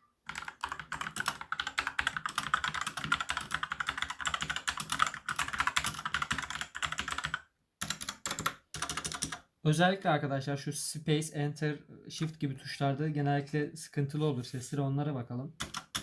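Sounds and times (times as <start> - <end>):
mechanical keyboard typing: 0.3 - 9.4, 15.6 - 16.0.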